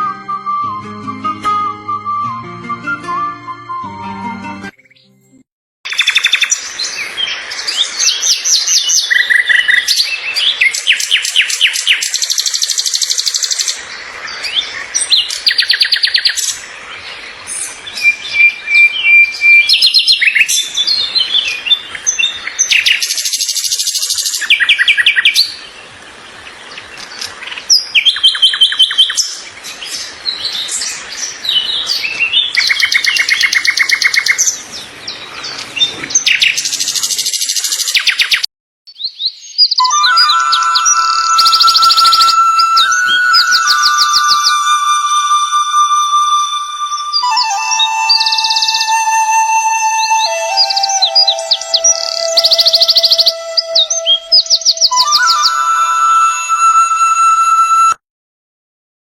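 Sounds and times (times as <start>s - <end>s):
held whistled note: 0.0s - 4.7s, 39.8s - 58.0s
birds singing trills and chirps: 5.9s - 55.8s.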